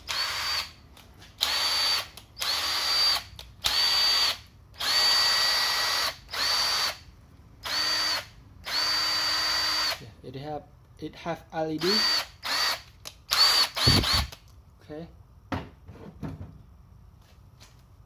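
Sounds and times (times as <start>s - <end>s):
impact wrench motor whine: 0.0s - 0.8s, 1.4s - 7.0s, 7.6s - 10.0s, 11.9s - 14.4s.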